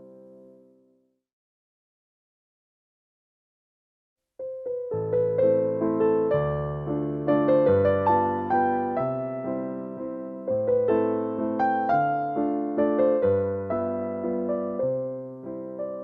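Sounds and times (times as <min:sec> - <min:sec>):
electric piano melody: 0:04.4 - 0:16.0.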